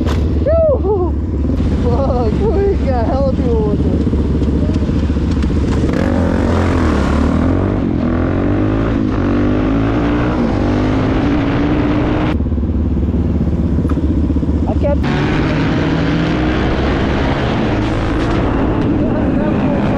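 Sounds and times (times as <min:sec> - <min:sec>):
low wind rumble: 0:00.0 - 0:19.9
motorcycle engine running: 0:00.0 - 0:19.9.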